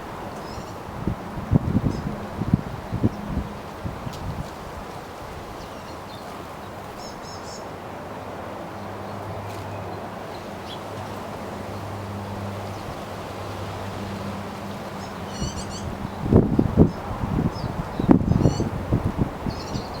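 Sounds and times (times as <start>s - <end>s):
wind blowing: 0.0s - 20.0s
small birds chirping: 5.6s - 7.7s, 14.6s - 18.8s, 19.4s - 20.0s.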